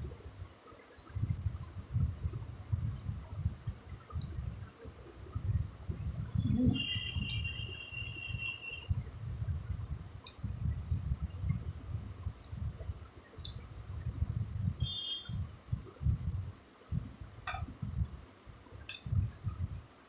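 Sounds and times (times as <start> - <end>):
high steady ringing tone: 6.4 - 8.9, 14.8 - 15.4.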